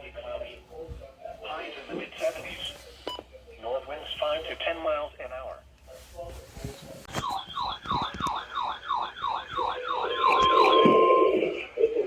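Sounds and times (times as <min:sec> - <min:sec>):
siren-like falling sweep alarm: 0:07.2 - 0:12.0
steady warning alarm tone: 0:07.2 - 0:12.0.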